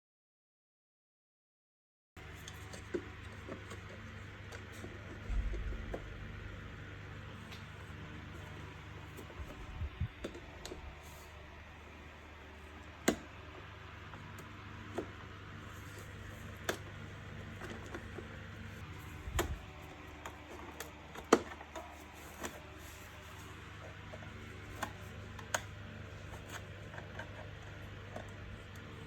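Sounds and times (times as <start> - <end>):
steady low hum: 2.2 - 29.0
plastic parts clicking and knocking: 14.3 - 28.8.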